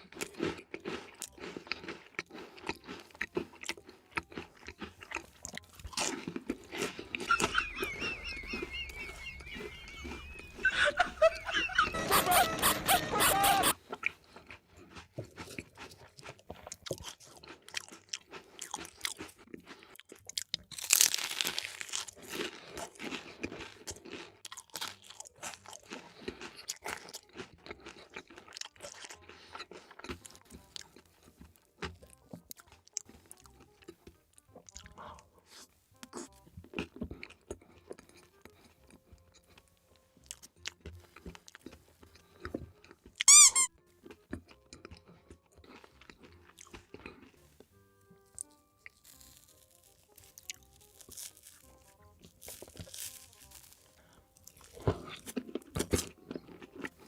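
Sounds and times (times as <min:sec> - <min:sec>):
crunchy food chewing: 0:00.0 - 0:57.0.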